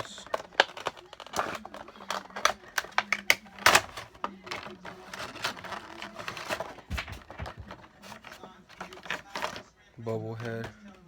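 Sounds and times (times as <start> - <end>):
toy packaging being unpacked: 0.0 - 11.0.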